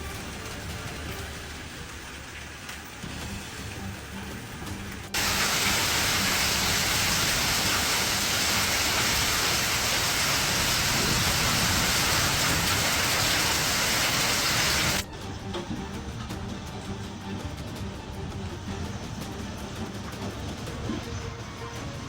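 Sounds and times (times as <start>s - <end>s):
heavy rain pouring: 0.0s - 15.1s.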